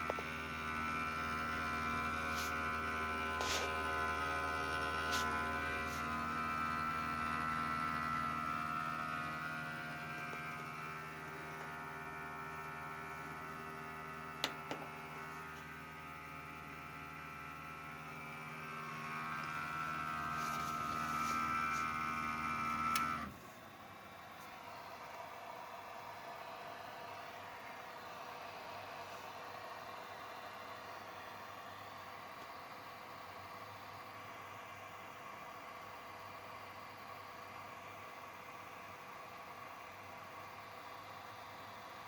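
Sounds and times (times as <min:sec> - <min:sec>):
power supply electrical hum: 0:00.0 - 0:32.5.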